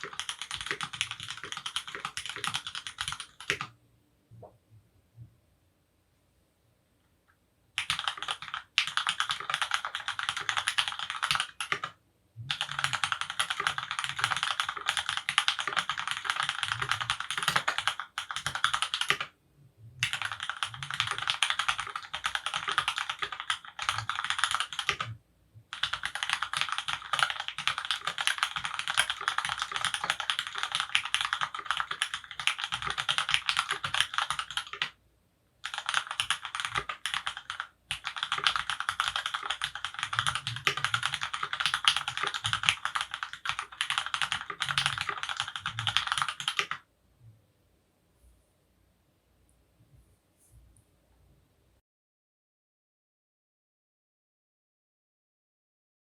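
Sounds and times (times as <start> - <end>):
rapid keyboard typing: 0.0 - 3.8, 7.8 - 19.4, 20.0 - 35.0, 35.6 - 46.9.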